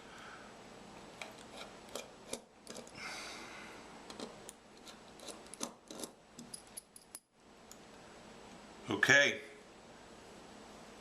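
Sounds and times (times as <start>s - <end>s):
screwdriver scrape: 1.2s - 2.9s, 4.1s - 6.2s.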